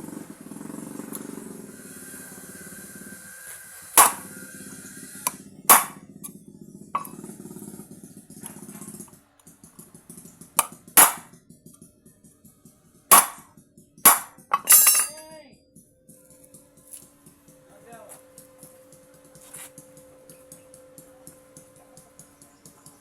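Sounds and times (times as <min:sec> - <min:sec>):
hammer striking steel plate: 0:04.0 - 0:04.3, 0:05.2 - 0:06.0, 0:07.0 - 0:07.2, 0:10.6 - 0:11.3, 0:13.1 - 0:13.5, 0:14.1 - 0:15.2
background music with pulsing beat: 0:15.7 - 0:23.0.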